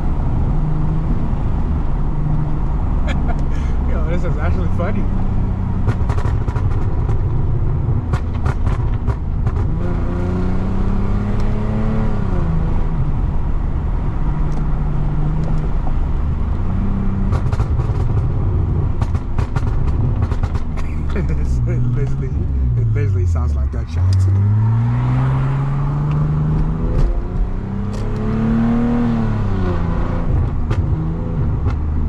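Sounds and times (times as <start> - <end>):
car engine revving: 0.0 - 32.0
exhaust popping and crackling: 2.1 - 10.1, 14.2 - 24.6, 25.3 - 28.3, 28.9 - 32.0.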